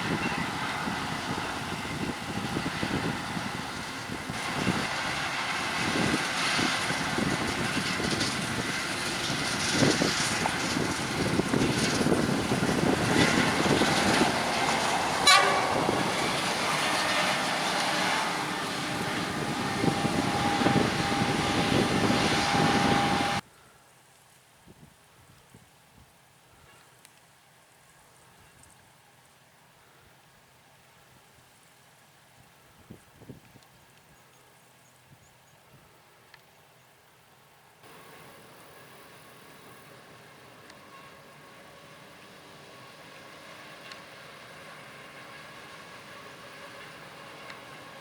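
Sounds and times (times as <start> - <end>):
forage harvester engine and chopping: 0.0 - 23.4, 37.8 - 48.0.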